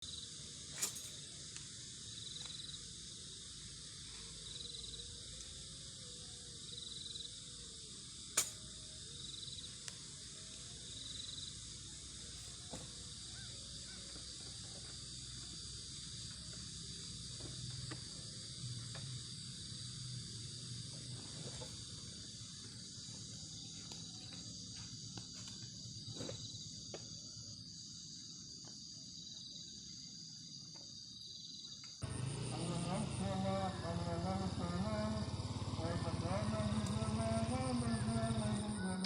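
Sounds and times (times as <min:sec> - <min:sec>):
insects chirring: 0:00.0 - 0:39.0.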